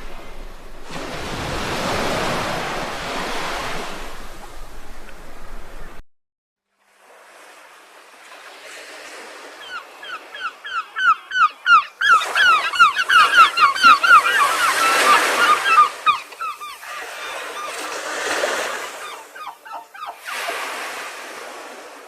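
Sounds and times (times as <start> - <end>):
surf washing on beach: 0.0 - 6.0, 20.2 - 22.0
flock of birds calling: 9.6 - 20.3.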